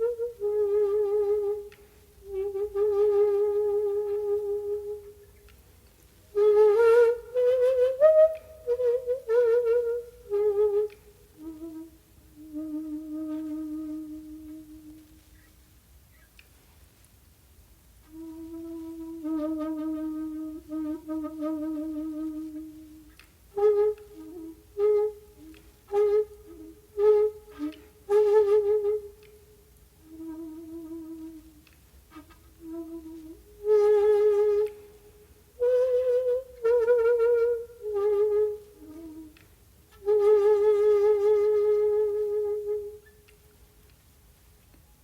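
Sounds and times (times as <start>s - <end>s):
breathy bamboo flute: 0.0s - 16.5s, 18.0s - 45.0s.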